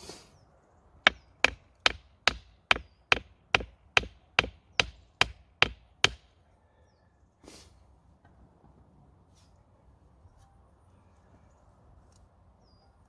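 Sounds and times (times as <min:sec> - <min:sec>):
tool striking wood: 0:01.0 - 0:06.3.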